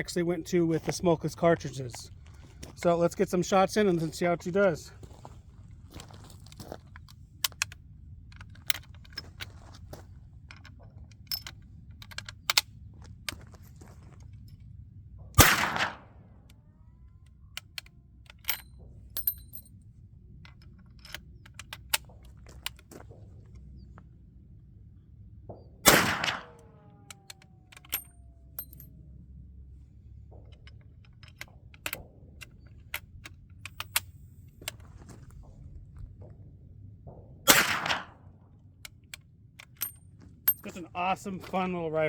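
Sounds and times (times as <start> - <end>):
metallic clicks of rifle action: 6.9 - 12.7, 17.5 - 19.6, 20.4 - 22.9, 25.9 - 28.9, 30.3 - 35.0, 38.8 - 40.8
rifle shots: 15.4 - 16.2, 25.8 - 27.3, 37.4 - 38.3.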